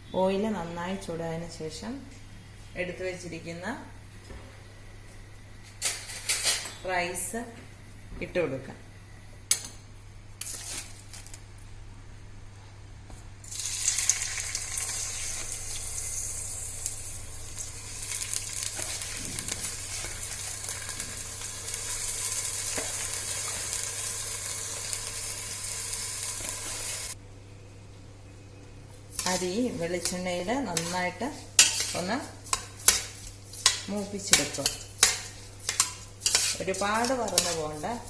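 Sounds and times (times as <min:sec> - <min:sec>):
rice sizzling in hot oil: 0:13.5 - 0:27.2, 0:29.1 - 0:38.0.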